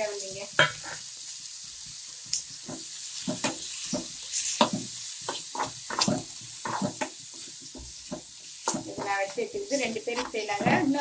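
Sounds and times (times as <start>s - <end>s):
leaves sizzling in oil: 0.0s - 11.0s
spatula scraping pan: 2.8s - 11.0s.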